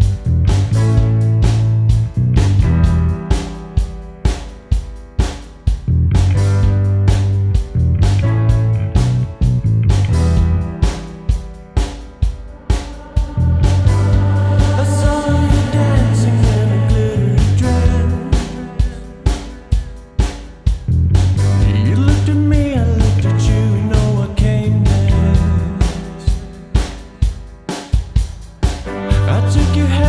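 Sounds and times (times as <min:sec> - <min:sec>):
bass line: 0:00.0 - 0:03.7, 0:05.7 - 0:11.6, 0:13.2 - 0:19.1, 0:20.8 - 0:26.0, 0:28.9 - 0:30.0
rock band playing: 0:00.0 - 0:13.0, 0:26.7 - 0:30.0
steady drum beat: 0:00.0 - 0:30.0
guitar: 0:28.9 - 0:30.0.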